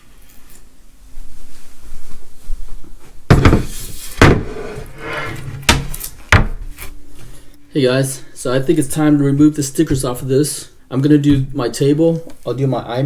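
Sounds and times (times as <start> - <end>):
objects rustling: 0.0 - 7.6
sharp knocks: 3.3 - 4.6.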